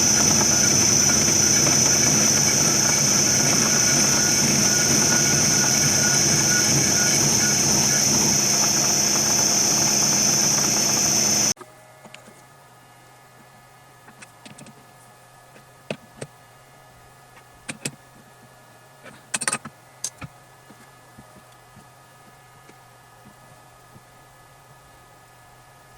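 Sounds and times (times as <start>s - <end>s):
power tool whining: 0.0s - 11.6s.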